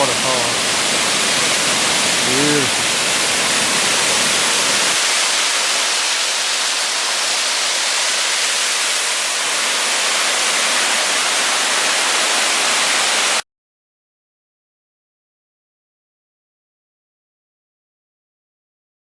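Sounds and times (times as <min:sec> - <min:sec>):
waterfall roaring: 0:00.0 - 0:13.4.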